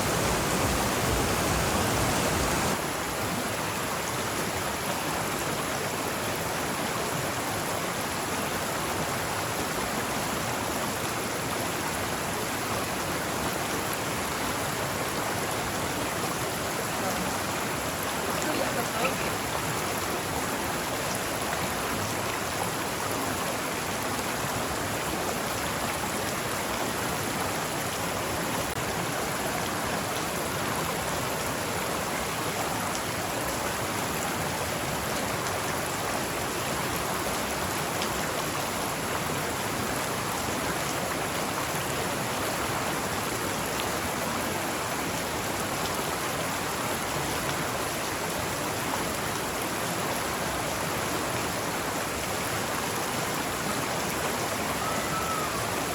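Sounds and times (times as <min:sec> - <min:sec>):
stream flowing: 0:00.0 - 0:55.9.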